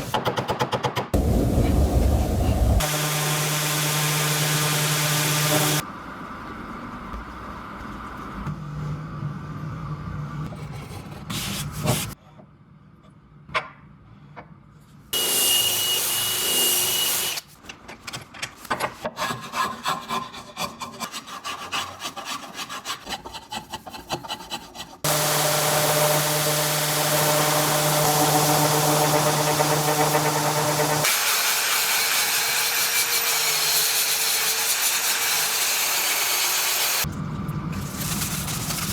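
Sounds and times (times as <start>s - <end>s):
power tool high whine: 2.6s - 5.8s, 15.2s - 17.4s, 25.1s - 33.8s
power tool running steadily: 2.6s - 5.8s, 15.2s - 17.4s, 25.1s - 33.9s.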